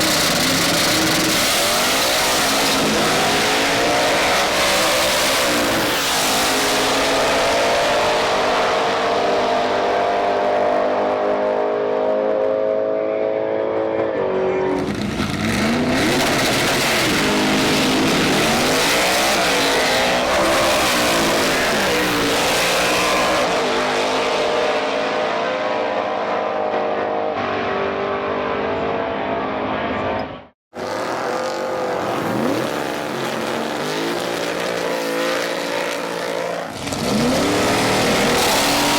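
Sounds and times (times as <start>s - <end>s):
race car engines revving: 0.0s - 38.9s.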